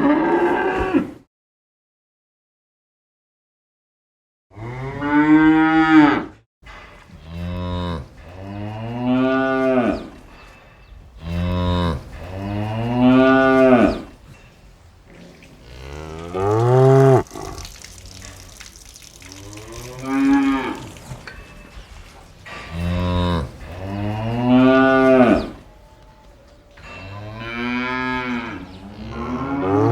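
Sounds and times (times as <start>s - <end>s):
cow mooing: 11.2s - 14.2s, 15.1s - 21.2s, 22.7s - 26.5s, 27.1s - 29.9s.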